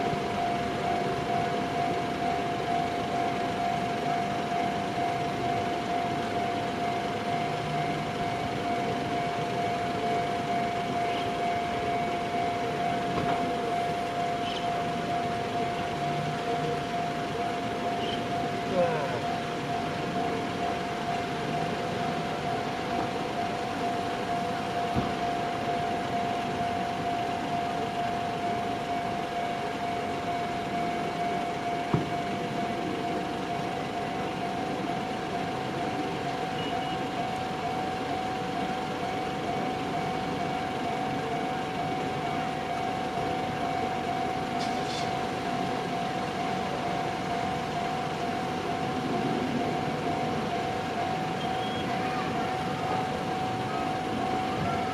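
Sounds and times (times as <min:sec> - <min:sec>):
electronic crossing warning bell: 0:00.0 - 0:54.9.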